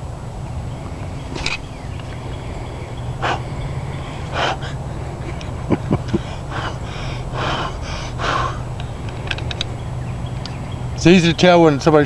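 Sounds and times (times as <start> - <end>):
steady low rumble: 0.0 - 12.0
breathy puffs: 2.1 - 9.2.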